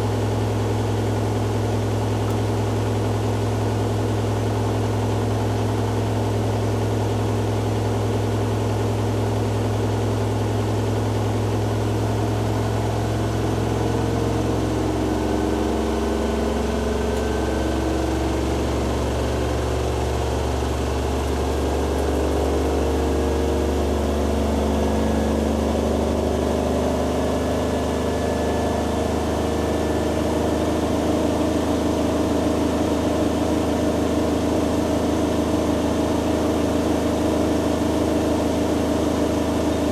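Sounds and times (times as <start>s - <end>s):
washing machine spinning: 11.3s - 39.9s.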